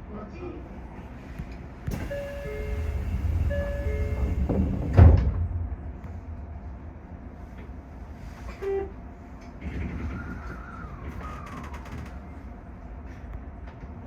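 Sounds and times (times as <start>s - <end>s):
electric train rumbling: 0.6s - 14.0s
short beep: 2.0s - 4.5s.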